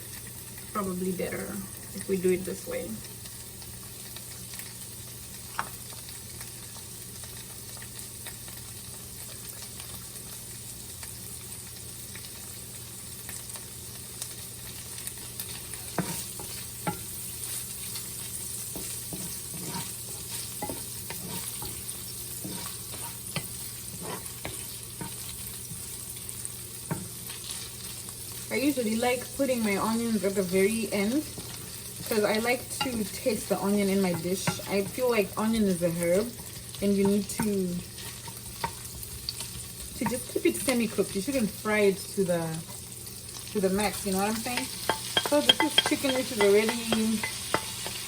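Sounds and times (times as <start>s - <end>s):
vegetables sizzling in a pan: 0.0s - 48.0s
utensil scraping against pan: 15.4s - 25.9s, 30.4s - 40.9s, 43.9s - 48.0s.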